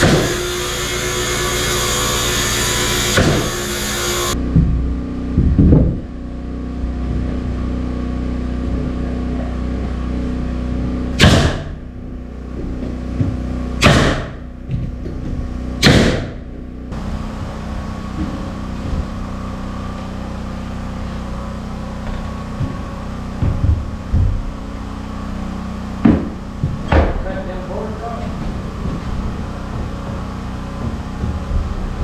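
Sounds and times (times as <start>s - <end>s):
machine hum: 0.0s - 32.0s.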